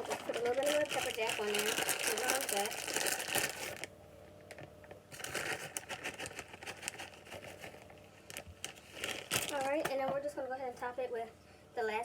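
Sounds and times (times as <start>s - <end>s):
shredded cheese rustling: 0.0s - 3.9s, 5.2s - 9.8s.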